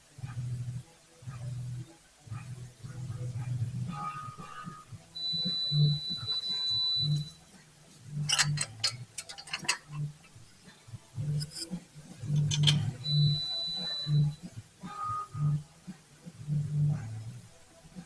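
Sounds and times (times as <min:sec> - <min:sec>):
high steady whine: 0:02.3 - 0:18.0
metal tools clinking: 0:08.3 - 0:10.0, 0:11.4 - 0:13.2.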